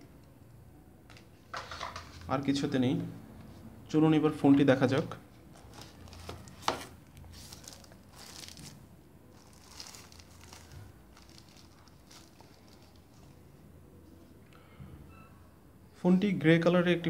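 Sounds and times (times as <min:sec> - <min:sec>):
packaging crinkling and rustling: 0:05.5 - 0:13.4.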